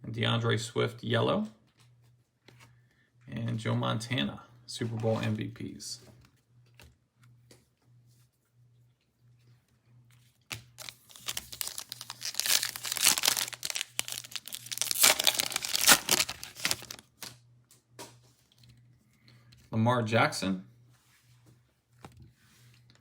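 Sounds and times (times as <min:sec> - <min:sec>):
wrapper tearing and crinkling: 0:10.6 - 0:17.4.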